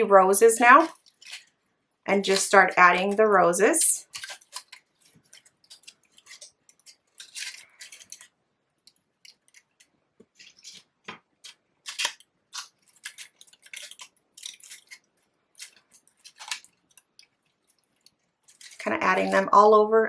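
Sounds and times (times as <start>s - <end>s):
paper rustling and crinkling: 4.0s - 8.4s, 9.3s - 19.5s.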